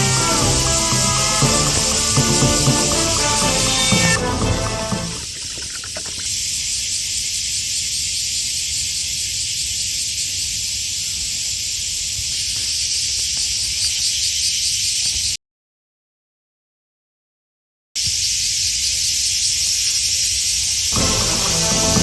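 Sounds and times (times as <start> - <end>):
music: 0.0 - 5.2, 20.9 - 22.0
steady high-pitched hiss: 0.0 - 15.4, 18.0 - 22.0.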